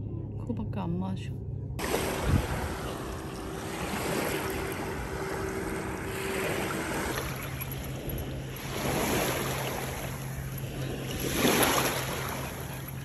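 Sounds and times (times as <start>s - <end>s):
faint steady hum: 0.0s - 13.0s
wind on microphone: 1.8s - 10.1s
small waves washing on sand: 1.8s - 13.0s.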